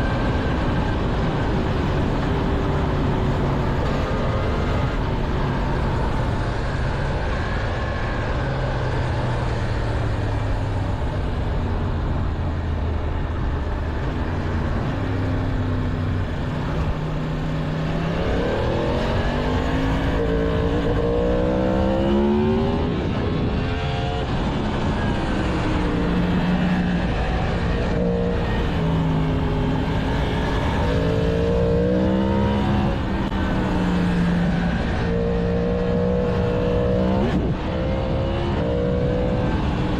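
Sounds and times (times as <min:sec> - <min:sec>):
wind and road noise: 0:00.0 - 0:39.9
motorcycle engine revving: 0:14.2 - 0:39.9.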